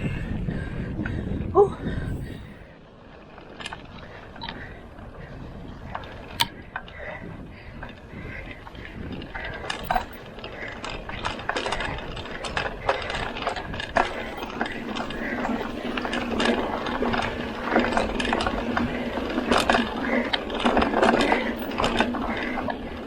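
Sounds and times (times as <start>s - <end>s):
bike rattles and clicks: 0.0s - 23.0s
bike freewheel ratcheting: 3.1s - 23.0s.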